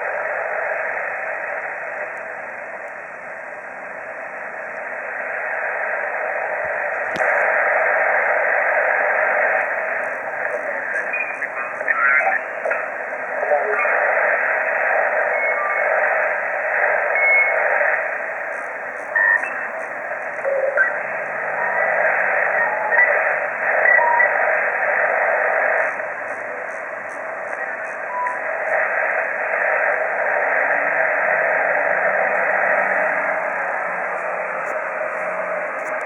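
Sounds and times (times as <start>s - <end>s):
radio white noise hiss: 0.0s - 36.0s
faint radio whistles: 3.9s - 36.0s.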